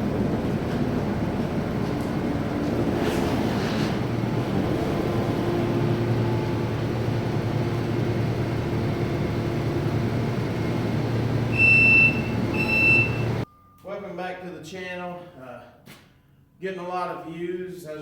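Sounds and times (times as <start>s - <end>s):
diesel engine running: 0.0s - 13.4s
backup alarm beeps: 11.4s - 13.8s.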